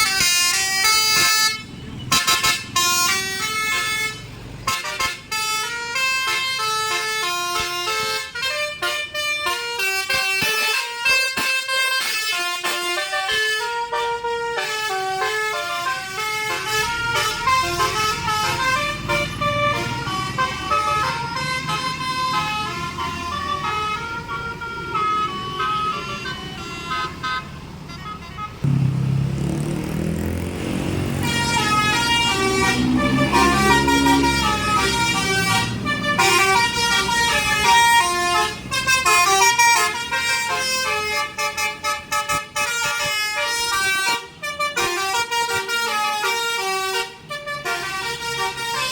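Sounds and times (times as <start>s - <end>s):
bus musical horn melody: 0.0s - 29.2s, 30.7s - 48.9s
low engine rumble: 28.6s - 39.1s.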